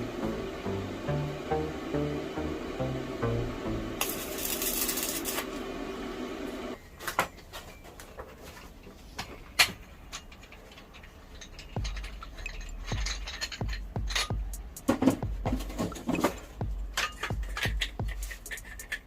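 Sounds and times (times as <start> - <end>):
background music: 0.0 - 5.1, 11.8 - 19.0
metal tubes and tools clinking: 9.6 - 19.0.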